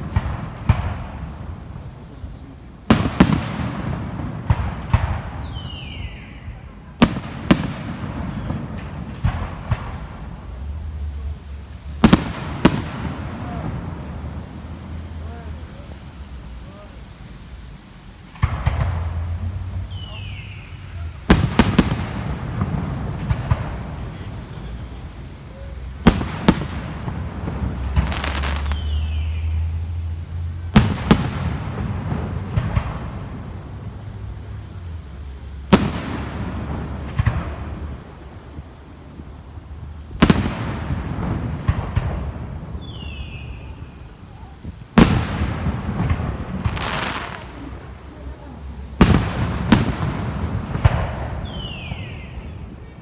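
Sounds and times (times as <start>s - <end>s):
fireworks bangs: 0.0s - 53.0s
fireworks crackling: 0.0s - 53.0s
falling whistle: 5.4s - 6.5s, 19.9s - 21.0s, 28.6s - 29.7s, 42.6s - 44.0s, 51.4s - 52.5s
low rumble: 7.9s - 26.1s.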